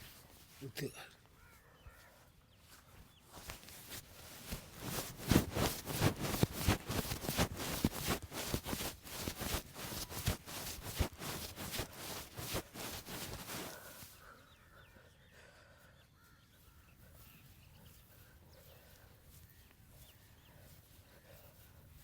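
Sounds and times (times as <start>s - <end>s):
hands slapping body in massage: 3.4s - 14.0s.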